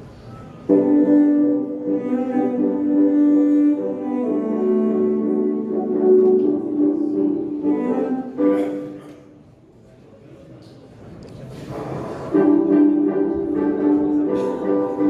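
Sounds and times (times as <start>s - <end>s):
piano: 0.0s - 9.0s, 11.8s - 15.0s
slow classical strings: 0.7s - 9.2s, 11.6s - 15.0s.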